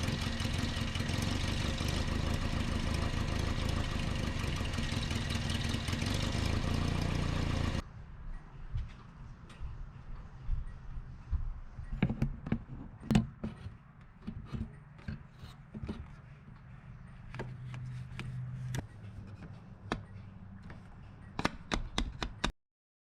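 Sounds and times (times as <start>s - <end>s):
truck engine idling: 0.0s - 7.8s
sharp clicks and knocks: 21.4s - 22.5s.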